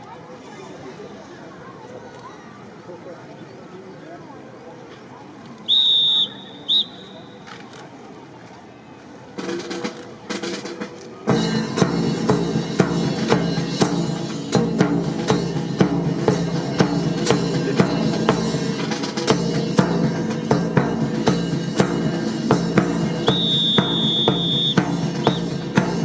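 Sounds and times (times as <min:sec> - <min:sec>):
music with drum-kit beat: 0:09.4 - 0:26.0.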